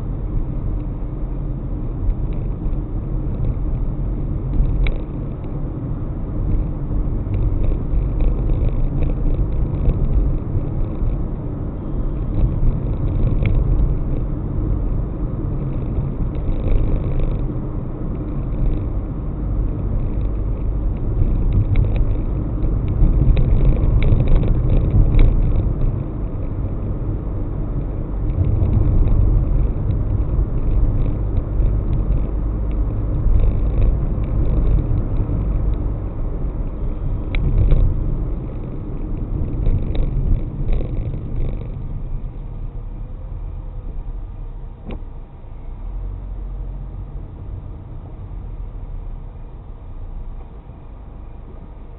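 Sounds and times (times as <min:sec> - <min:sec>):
car engine and road rumble: 0:00.0 - 0:51.9
faint ticks: 0:02.1 - 0:03.6, 0:04.5 - 0:05.6, 0:07.3 - 0:11.3, 0:12.2 - 0:14.4, 0:19.6 - 0:26.8, 0:27.7 - 0:42.4.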